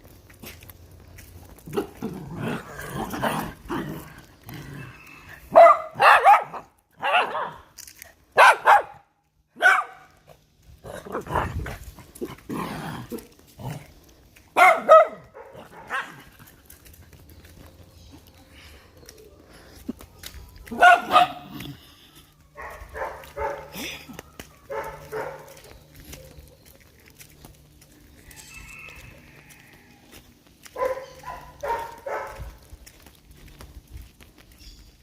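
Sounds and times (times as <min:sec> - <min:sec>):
dog barking: 0:05.5 - 0:07.6, 0:08.4 - 0:10.1, 0:14.6 - 0:16.2, 0:20.7 - 0:21.6, 0:22.6 - 0:23.8, 0:24.7 - 0:25.7, 0:30.7 - 0:32.5.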